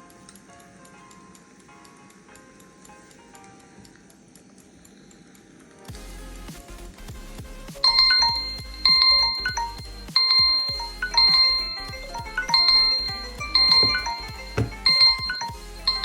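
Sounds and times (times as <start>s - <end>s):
bell-like chime notes: 7.8s - 16.0s.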